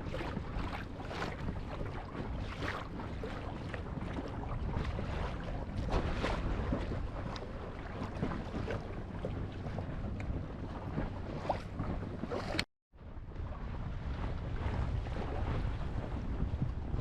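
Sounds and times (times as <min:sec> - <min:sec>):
water splashing along boat hull: 0:00.0 - 0:17.0
steady low rumble: 0:13.0 - 0:17.0.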